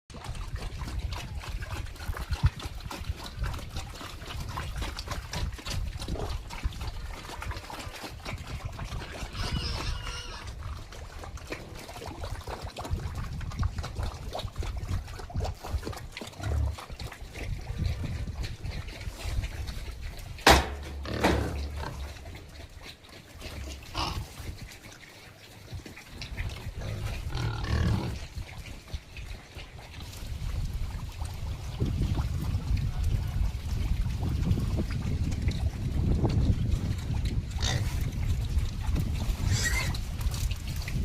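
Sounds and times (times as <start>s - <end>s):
pigs grunting: 0.2s - 30.0s, 37.4s - 38.3s, 39.3s - 40.2s
wet splashing and knocking: 20.4s - 22.1s.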